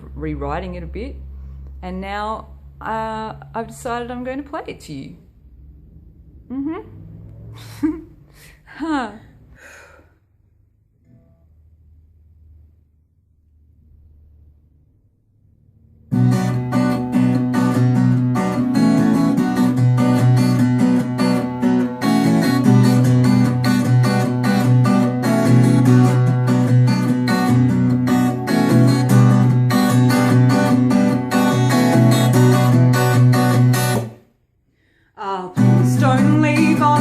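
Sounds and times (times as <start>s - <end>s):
acoustic guitar strumming: 16.1s - 34.2s, 35.6s - 37.0s.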